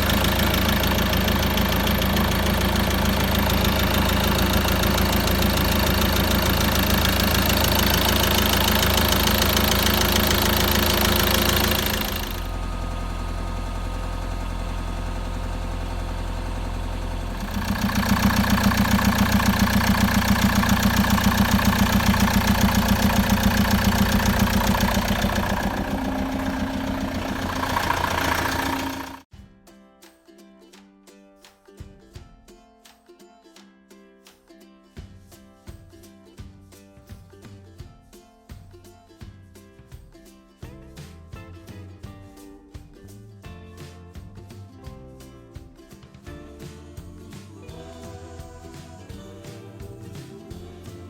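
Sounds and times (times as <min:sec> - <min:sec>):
diesel engine idling with knock: 0:00.0 - 0:29.3.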